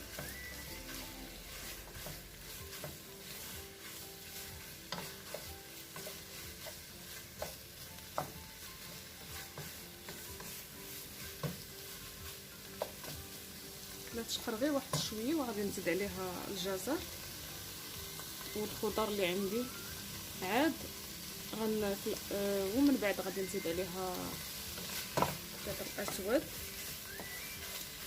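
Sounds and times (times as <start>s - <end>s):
onion and cuttlefish sizzling in oil: 0.0s - 28.0s.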